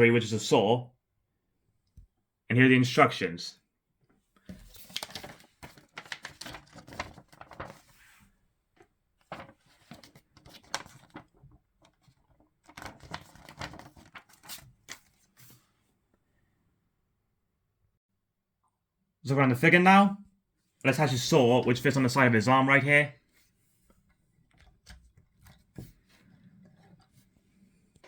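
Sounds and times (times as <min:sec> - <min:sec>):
packaging rustling and tearing: 0:04.6 - 0:08.0, 0:09.3 - 0:15.1.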